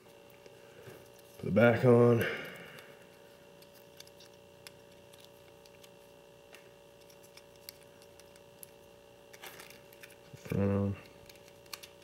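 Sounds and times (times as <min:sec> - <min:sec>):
faint steady hum: 0:00.0 - 0:12.0.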